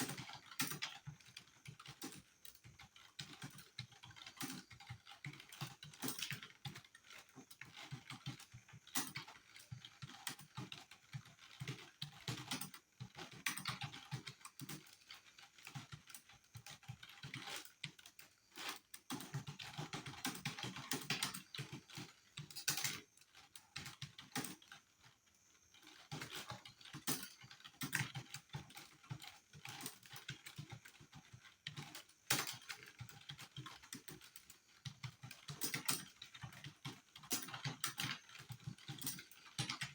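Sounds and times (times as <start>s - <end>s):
fast keyboard typing: 19.1s - 23.0s.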